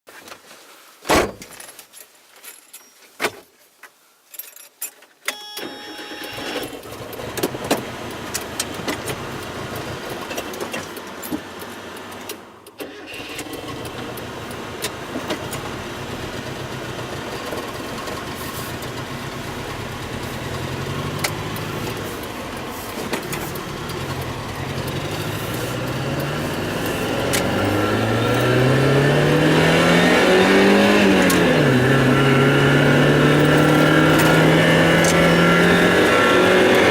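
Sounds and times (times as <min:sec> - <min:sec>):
car engine starting and running: 0:05.6 - 0:36.9
sharp clicks: 0:26.2 - 0:27.6.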